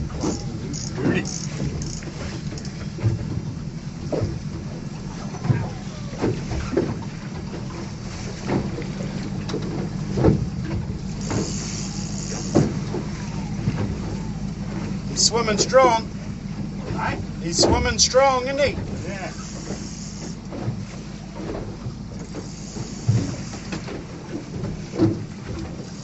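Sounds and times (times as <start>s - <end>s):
boat engine idling: 0.0s - 26.0s
short knocks: 12.3s - 19.0s.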